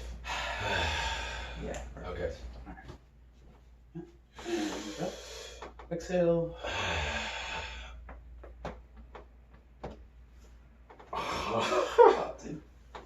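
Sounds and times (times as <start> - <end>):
person exhaling breathily: 0.0 - 1.7, 4.4 - 5.6
person groaning: 0.6 - 1.6, 11.2 - 12.1
spine cracking and popping: 7.6 - 10.2, 10.8 - 11.6.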